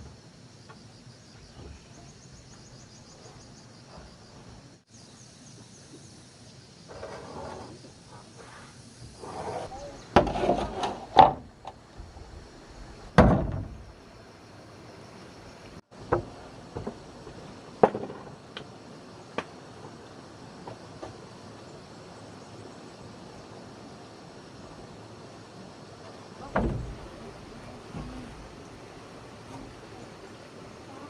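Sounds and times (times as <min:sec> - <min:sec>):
high drone of insects: 0:00.0 - 0:31.0
knocks and thumps: 0:13.1 - 0:13.9, 0:16.0 - 0:18.4, 0:26.4 - 0:29.8.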